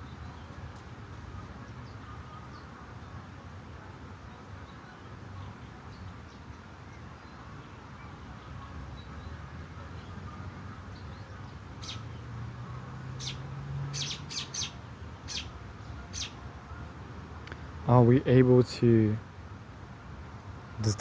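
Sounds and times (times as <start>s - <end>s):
bird chirping: 11.8s - 12.2s, 13.1s - 16.4s.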